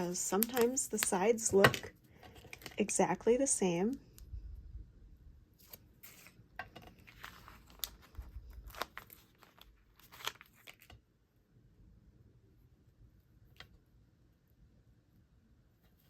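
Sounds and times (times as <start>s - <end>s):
paper and plastic rustling: 0.0s - 2.8s, 5.6s - 11.0s.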